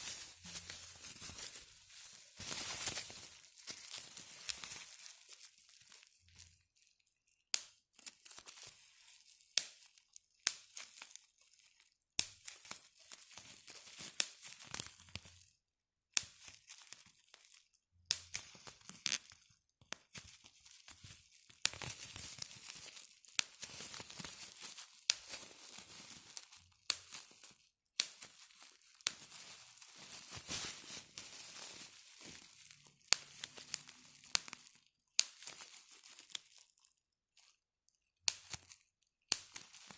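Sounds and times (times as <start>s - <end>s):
plastic crinkling: 0.0s - 7.4s, 20.2s - 37.5s, 38.4s - 39.9s
bubble wrap popping: 0.0s - 11.6s, 12.2s - 15.5s, 16.2s - 37.5s, 38.2s - 39.9s.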